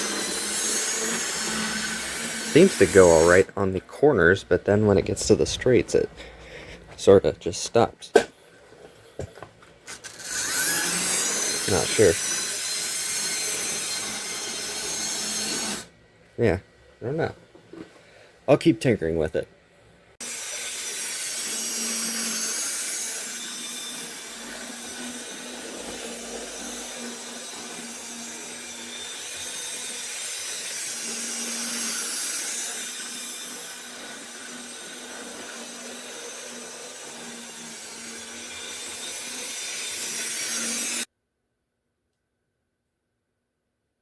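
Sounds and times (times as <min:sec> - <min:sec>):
model train motor buzzing: 0:00.0 - 0:03.5, 0:09.9 - 0:15.9, 0:20.2 - 0:41.1.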